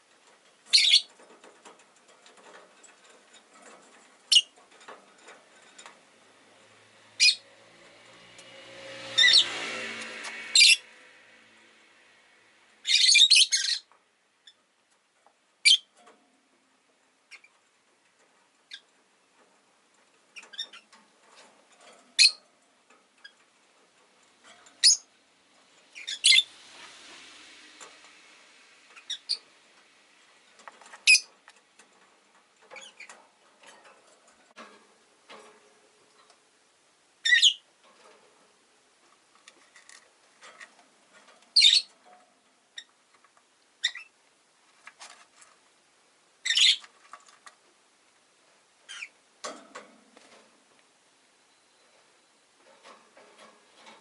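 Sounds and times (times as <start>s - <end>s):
lovebirds shrill chirps: 0.7s - 1.1s, 7.2s - 7.4s, 10.5s - 10.8s, 12.8s - 13.9s, 22.2s - 22.4s, 24.8s - 25.1s, 26.0s - 26.5s, 29.0s - 29.4s, 31.0s - 31.3s, 37.2s - 37.6s, 41.6s - 41.9s, 43.8s - 44.1s, 46.4s - 46.9s, 48.9s - 49.2s.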